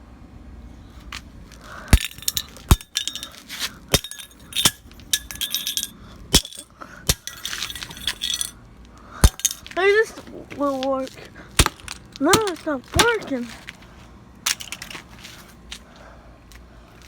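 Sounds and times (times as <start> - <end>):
small loose parts rattling: 1.6 - 8.6, 9.2 - 10.0, 10.7 - 13.6, 14.4 - 15.2.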